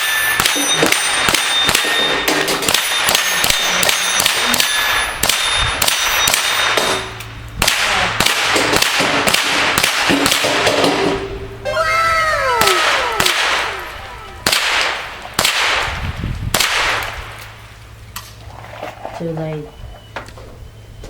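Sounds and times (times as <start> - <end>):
metallic ring of steel targets: 0.0 - 7.3
gunshots: 12.6 - 17.2.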